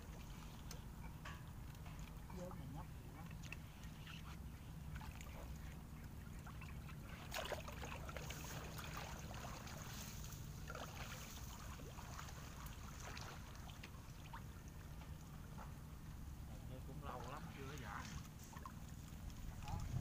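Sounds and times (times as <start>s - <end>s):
water splashing and sloshing: 0.0s - 20.0s
steady low rumble: 18.6s - 20.0s.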